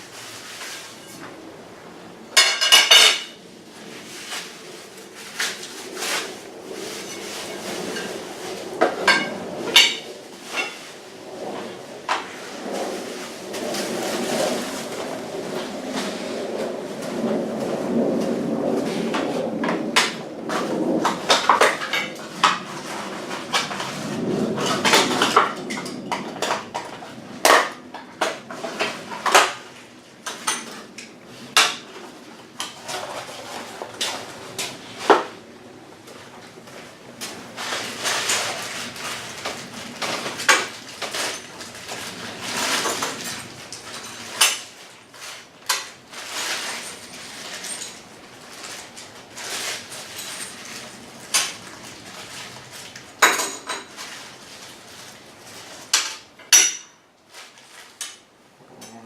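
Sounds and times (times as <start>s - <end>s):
packaging rustling: 3.2s - 17.1s, 36.1s - 56.3s.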